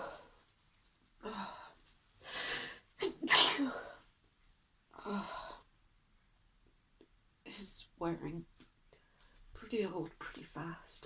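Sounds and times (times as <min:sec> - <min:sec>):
woman sneezing: 0:03.0 - 0:03.8.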